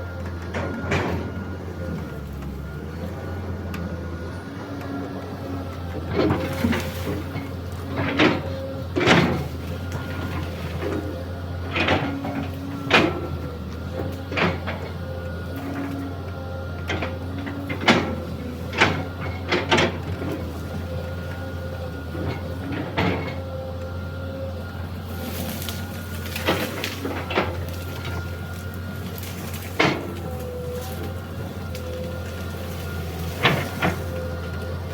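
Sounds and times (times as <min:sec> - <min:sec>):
excavator engine running: 0:00.0 - 0:34.9
sharp cracks and knocks: 0:25.3 - 0:34.4.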